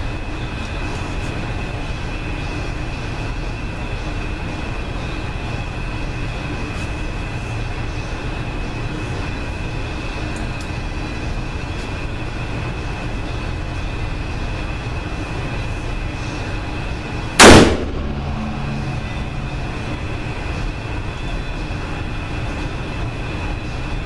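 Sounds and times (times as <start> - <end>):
steady background rush: 0.0 - 24.0
loud handgun shot: 17.4 - 18.4.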